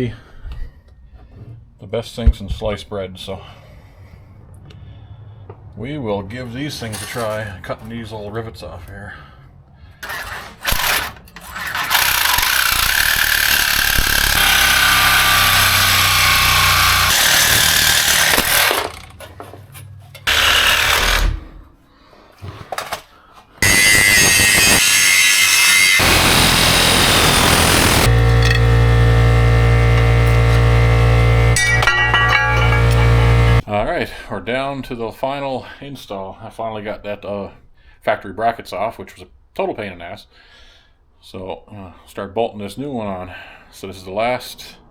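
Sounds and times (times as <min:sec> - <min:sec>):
cutting torch hissing: 0:23.6 - 0:28.1.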